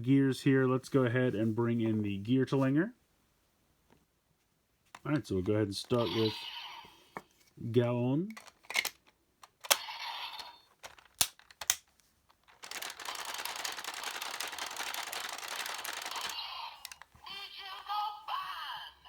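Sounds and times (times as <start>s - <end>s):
toy electronic sound effect: 6.0s - 7.0s, 9.6s - 10.7s, 15.6s - 17.0s
plastic clicks of toy gear: 8.3s - 17.1s
toy gear rattling as spun: 8.4s - 11.7s, 12.4s - 17.1s.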